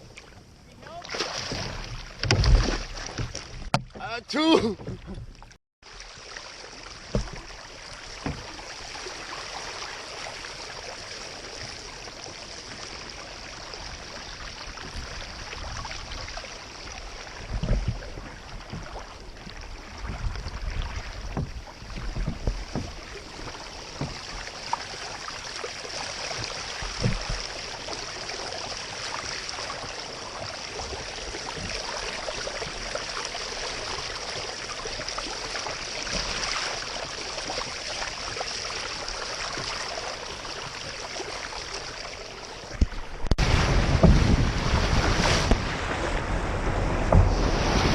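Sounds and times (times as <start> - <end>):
water rushing: 0.0 - 47.9
low knocks and bumps: 20.0 - 23.0, 42.8 - 47.6.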